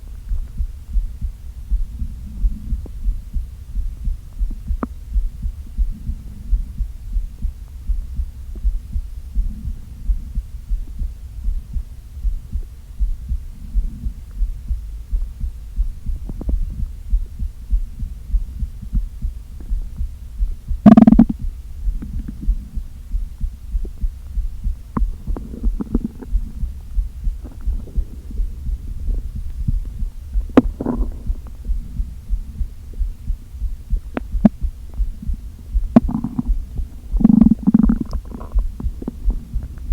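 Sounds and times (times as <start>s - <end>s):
low throbbing pulse: 0.0s - 39.9s
stomach growling: 20.8s - 21.4s, 24.9s - 33.2s, 33.8s - 39.9s
stomach gurgles: 20.8s - 22.9s, 24.9s - 39.9s.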